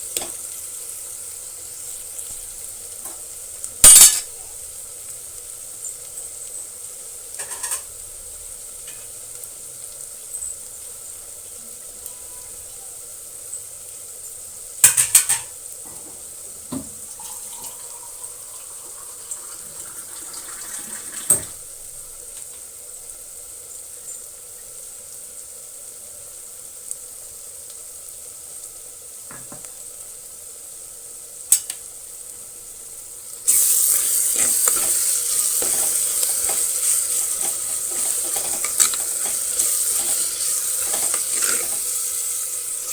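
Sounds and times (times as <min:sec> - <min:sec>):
onion and tomato sizzling: 0:00.0 - 0:42.9
stirring and scraping: 0:33.9 - 0:42.9.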